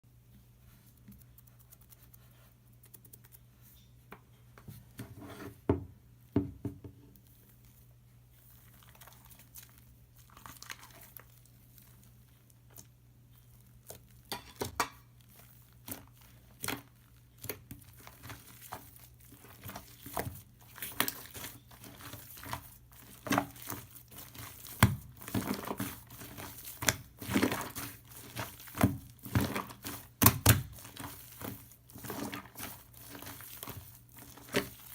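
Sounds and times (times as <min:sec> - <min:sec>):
slime squished by hand: 0:15.3 - 0:34.9.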